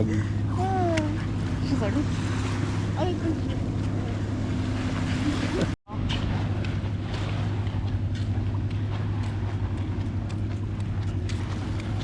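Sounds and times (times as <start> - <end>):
engine droning: 0.0 - 12.0.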